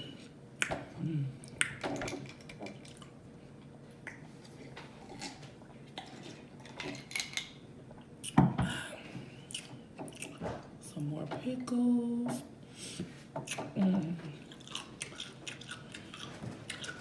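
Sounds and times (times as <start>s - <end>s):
chewing: 1.5s - 3.2s, 9.5s - 10.4s, 14.3s - 17.0s.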